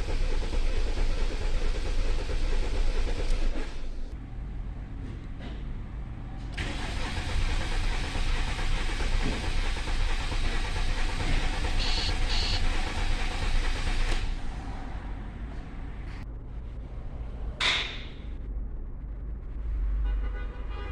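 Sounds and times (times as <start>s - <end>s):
car engine cranking on starter: 0.0s - 4.2s, 6.4s - 15.2s.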